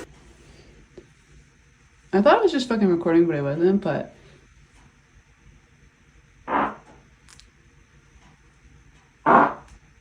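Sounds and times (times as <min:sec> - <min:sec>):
person farting: 0:06.5 - 0:06.9, 0:09.2 - 0:09.7.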